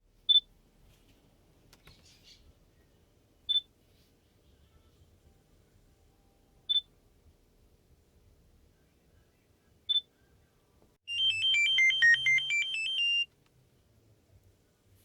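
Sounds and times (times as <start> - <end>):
electronic phone ringtone: 11.1 - 13.3
phone beep: 11.1 - 13.3.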